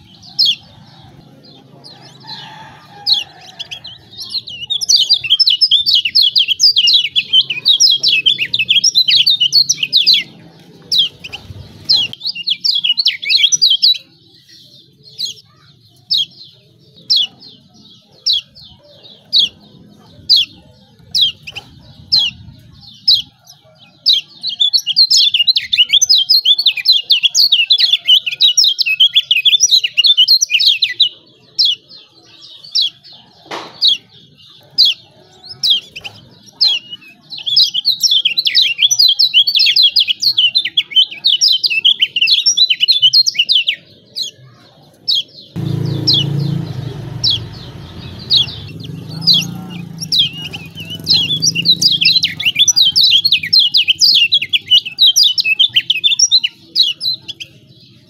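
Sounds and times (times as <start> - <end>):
bird chirping rapidly: 1.9 - 23.4, 45.2 - 58.0.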